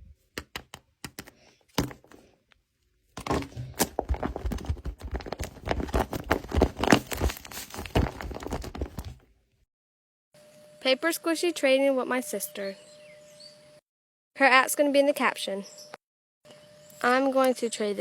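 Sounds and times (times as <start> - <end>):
paper crinkling: 3.2 - 9.2.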